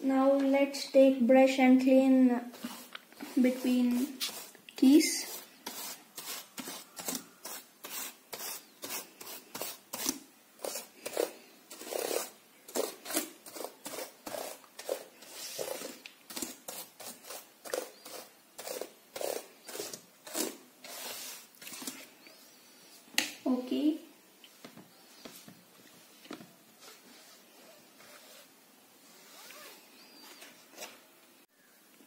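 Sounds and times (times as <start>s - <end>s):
brush scrubbing keyboard keys: 2.6s - 8.6s.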